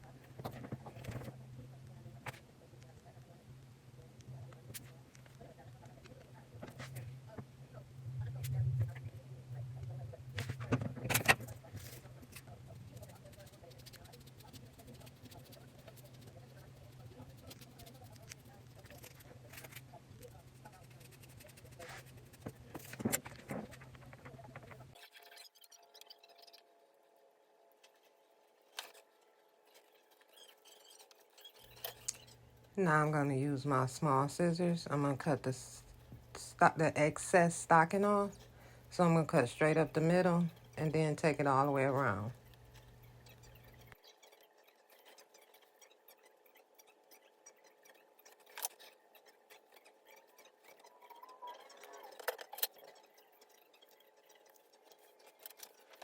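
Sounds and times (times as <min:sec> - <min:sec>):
low hum: 0:05.4 - 0:13.4.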